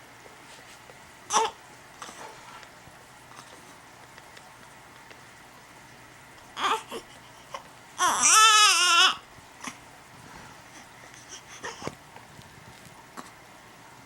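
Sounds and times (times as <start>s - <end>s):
baby whimpering: 1.3s - 2.2s, 6.6s - 9.8s
baby crying loudly: 8.0s - 9.2s.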